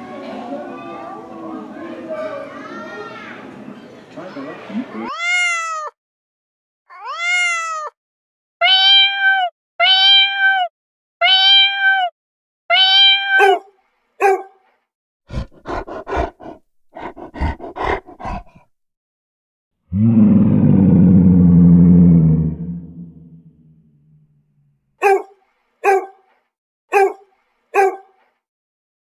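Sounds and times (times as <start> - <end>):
cat meowing: 5.0 - 6.0, 6.9 - 8.0, 8.6 - 12.1, 12.7 - 14.4
animal making fast deep pulses: 15.3 - 18.7.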